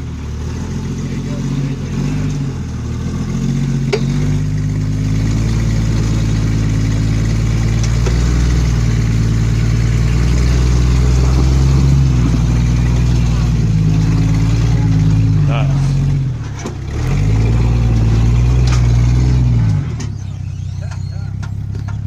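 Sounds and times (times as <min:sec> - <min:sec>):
vehicle engine running at low revs: 0:00.0 - 0:22.0.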